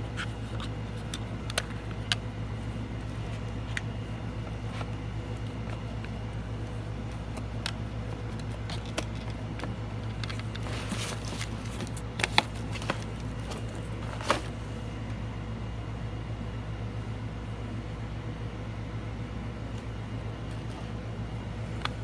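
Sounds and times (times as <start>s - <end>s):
air conditioner humming: 0.0s - 22.0s
crafting supplies clicking: 0.2s - 2.3s, 7.2s - 14.5s.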